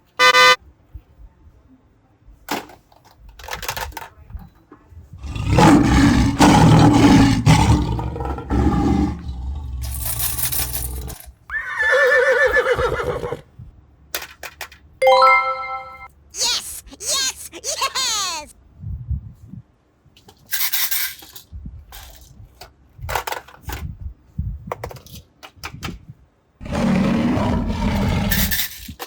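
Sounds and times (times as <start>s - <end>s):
animal roaring: 5.2s - 11.2s, 26.6s - 28.6s
horse whinny: 9.8s - 13.4s.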